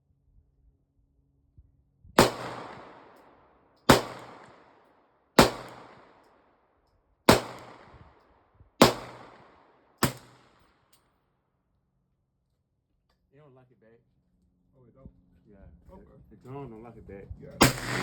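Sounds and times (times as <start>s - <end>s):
handgun shots: 2.2s - 3.2s, 3.9s - 4.6s, 5.4s - 6.1s, 7.3s - 8.0s, 8.8s - 10.5s, 17.6s - 18.0s.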